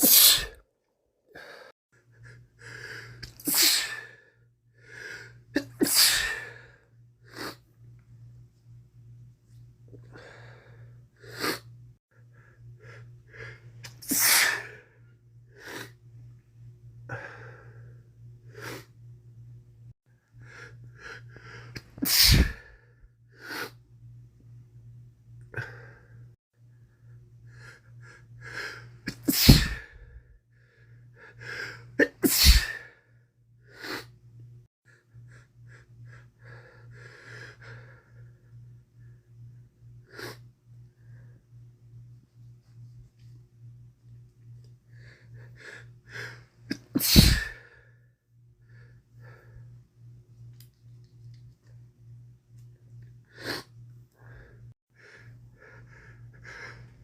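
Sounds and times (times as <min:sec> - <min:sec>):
man sneezing: 0:00.0 - 0:00.6, 0:14.0 - 0:14.7, 0:22.0 - 0:22.6, 0:29.1 - 0:29.9, 0:32.0 - 0:32.8, 0:46.7 - 0:47.6.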